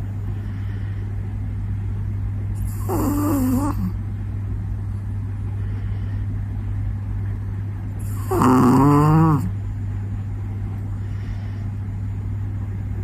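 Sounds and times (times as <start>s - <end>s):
steady low hum: 0.0s - 13.0s
puppy snoring: 2.5s - 4.0s, 8.0s - 9.6s.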